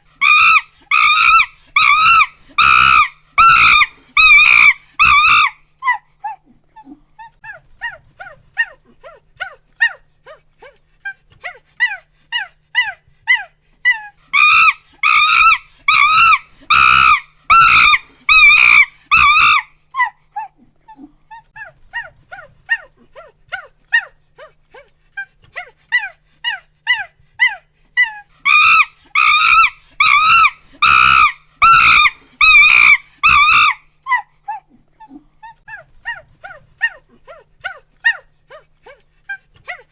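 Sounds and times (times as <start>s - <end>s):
monkey hooting and screaming: 0.0s - 6.4s, 11.8s - 20.5s, 26.0s - 34.7s.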